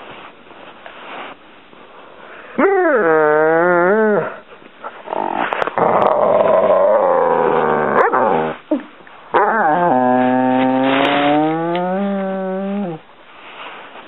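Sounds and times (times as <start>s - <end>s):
dog whining and growling: 2.6s - 13.1s.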